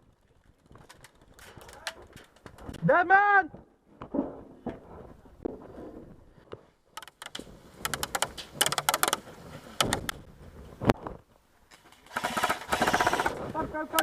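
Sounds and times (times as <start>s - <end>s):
airsoft guns firing: 12.1s - 13.5s.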